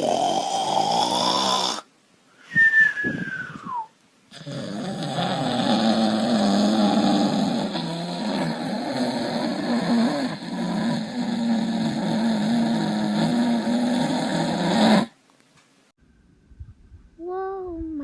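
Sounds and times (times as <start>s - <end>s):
loud rattling snoring: 0.0s - 1.9s, 4.3s - 15.2s.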